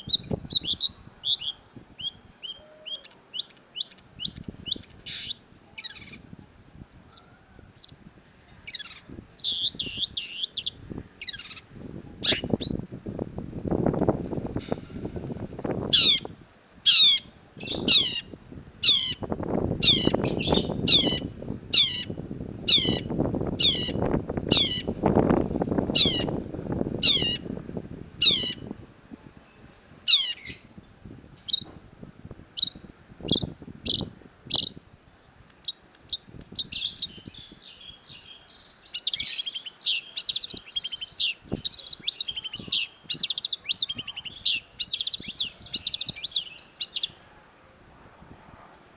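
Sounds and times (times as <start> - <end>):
bird calling: 0.0 - 12.8, 15.9 - 16.3, 16.9 - 25.1, 25.9 - 26.4, 27.0 - 27.5, 28.2 - 28.7, 30.1 - 30.7
bird chattering song: 0.0 - 12.9, 15.9 - 16.3, 16.9 - 25.2, 25.9 - 26.4, 27.0 - 27.5, 28.2 - 28.7, 30.1 - 30.7, 31.5 - 31.7, 32.6 - 47.2.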